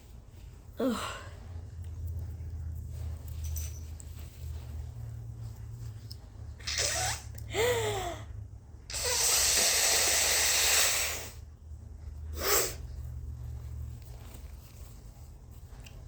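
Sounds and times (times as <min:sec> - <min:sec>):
high-pitched gasping: 0:06.6 - 0:08.3, 0:08.9 - 0:11.4.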